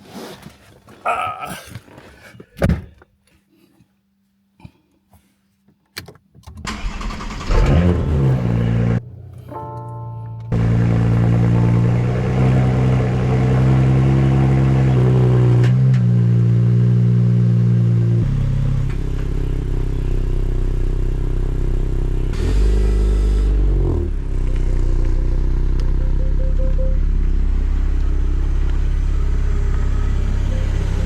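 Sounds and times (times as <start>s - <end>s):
deeper engine rumble of moving car: 6.7s - 9.5s, 10.3s - 31.0s
car engine starting and idling: 6.7s - 31.0s.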